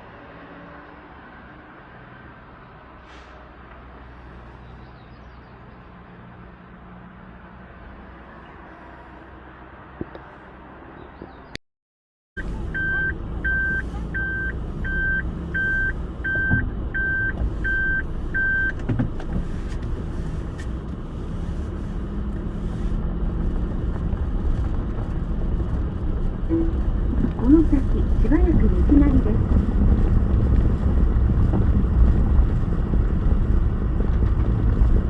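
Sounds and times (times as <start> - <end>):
car warning beeps: 12.4 - 18.8, 26.5 - 27.3
steady low rumble: 19.4 - 35.0.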